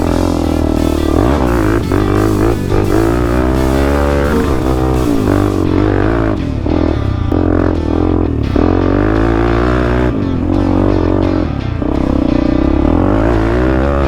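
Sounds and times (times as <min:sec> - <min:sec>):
background music with bass: 0:00.0 - 0:14.0
vehicle engine revving: 0:00.0 - 0:14.0.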